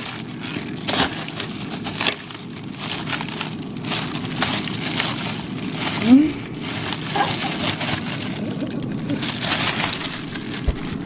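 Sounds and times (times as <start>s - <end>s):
plastic bags crinkling: 0.0s - 11.0s
rustling: 0.0s - 11.0s.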